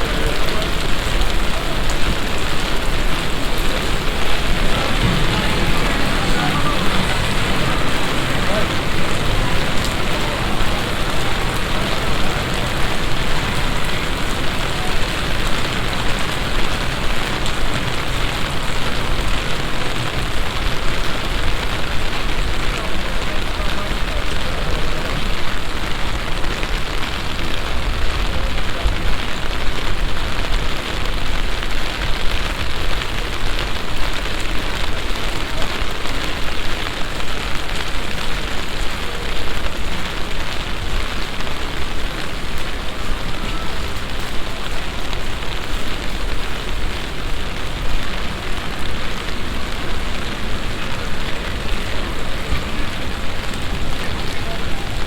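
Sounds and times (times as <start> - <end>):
heavy rain hissing: 0.0 - 55.0.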